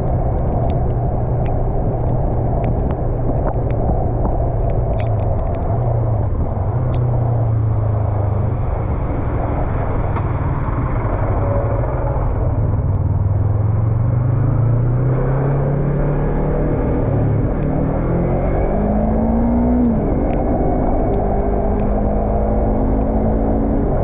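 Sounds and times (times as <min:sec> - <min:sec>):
road and wind noise: 0:00.0 - 0:24.0
motorcycle engine running: 0:06.3 - 0:15.8.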